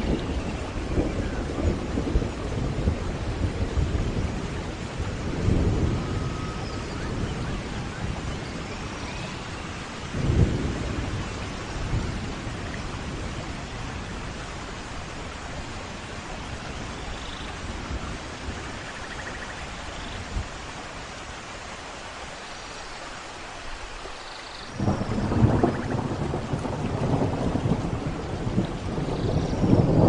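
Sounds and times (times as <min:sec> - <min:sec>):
rolling thunder: 0:00.0 - 0:17.0, 0:24.7 - 0:30.0
steady rain: 0:00.0 - 0:30.0.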